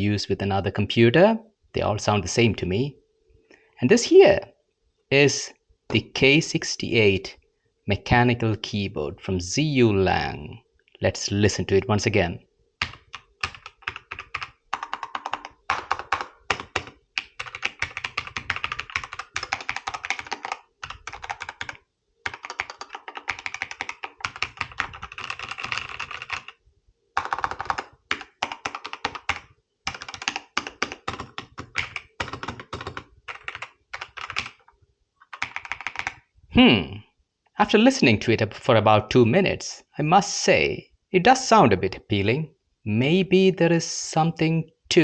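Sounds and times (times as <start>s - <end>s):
mechanical keyboard typing: 12.8s - 26.6s, 27.2s - 36.2s.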